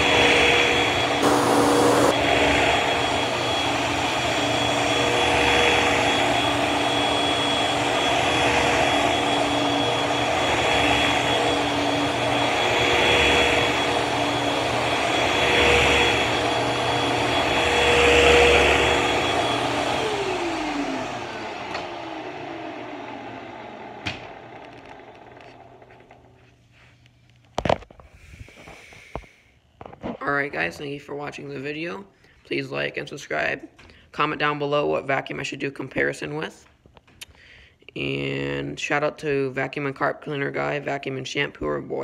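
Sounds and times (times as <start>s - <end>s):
motor winding down whine: 0.0s - 26.2s
vacuum cleaner running: 0.0s - 26.9s.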